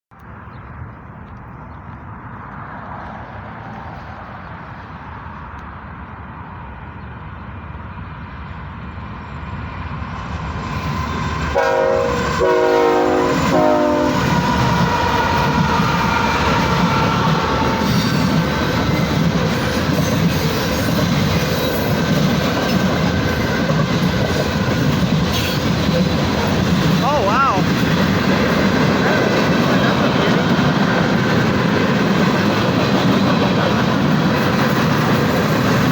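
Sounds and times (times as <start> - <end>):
train rumble: 0.3 - 35.9
locomotive air horn blasts: 11.5 - 16.4.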